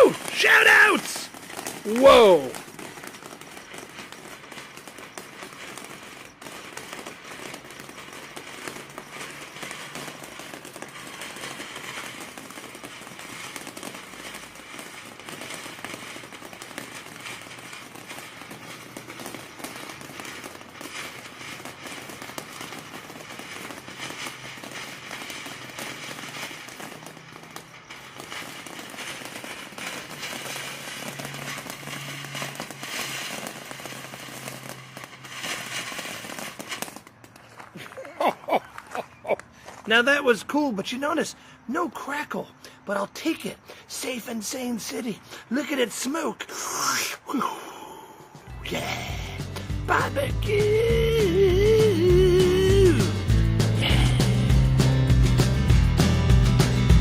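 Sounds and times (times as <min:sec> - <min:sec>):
firework fountain hissing sparks: 0:00.0 - 0:57.0.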